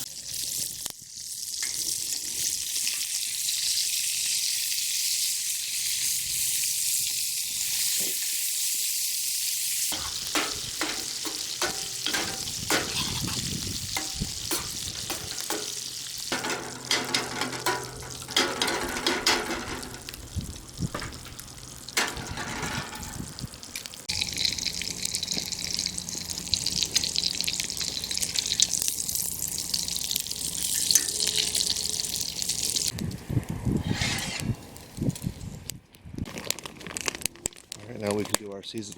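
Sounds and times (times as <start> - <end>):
eggs sizzling in a pan: 0.0 - 32.9
utensil scraping a pan: 9.9 - 23.4, 33.8 - 34.8.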